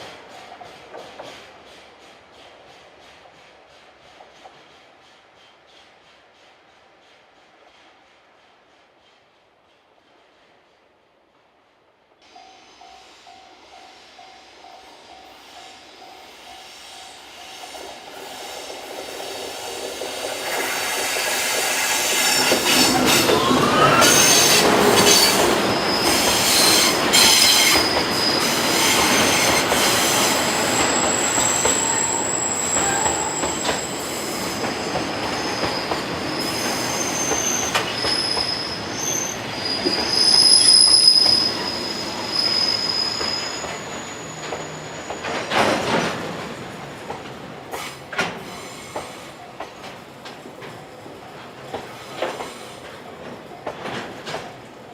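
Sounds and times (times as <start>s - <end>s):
freight train passing: 0.0s - 54.9s
wheel flanges squealing: 21.4s - 45.7s.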